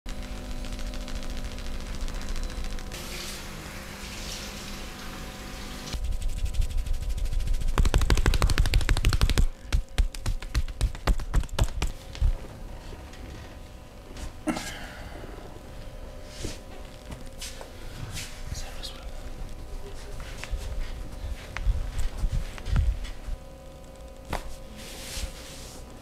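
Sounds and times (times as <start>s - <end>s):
hands slapping body: 7.7s - 12.3s, 24.3s - 24.5s.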